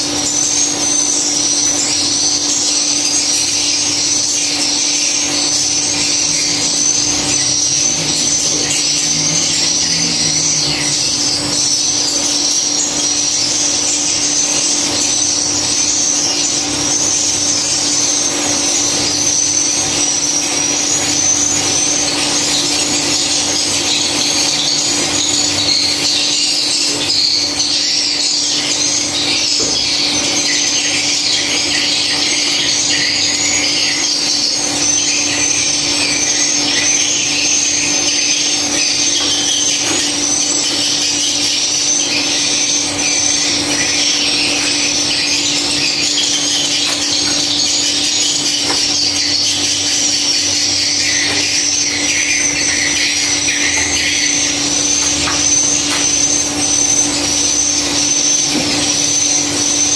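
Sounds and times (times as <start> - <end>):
steady low hum: 0.0 - 26.1
swiftlets twittering: 0.0 - 59.9.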